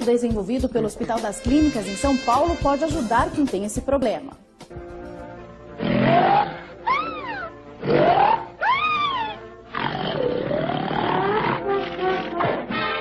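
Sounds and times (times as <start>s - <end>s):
background music: 0.0s - 13.0s
person snoring: 5.8s - 7.0s.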